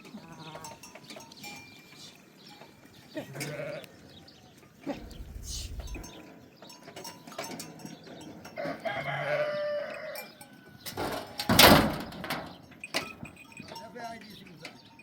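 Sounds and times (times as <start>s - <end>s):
rooster crowing: 8.6s - 11.0s.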